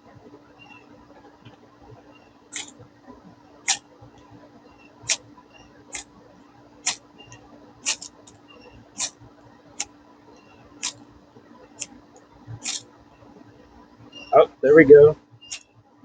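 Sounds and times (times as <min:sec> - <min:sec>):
steel scraping ferro rod: 0:02.6 - 0:02.8, 0:07.8 - 0:08.2, 0:12.6 - 0:12.8.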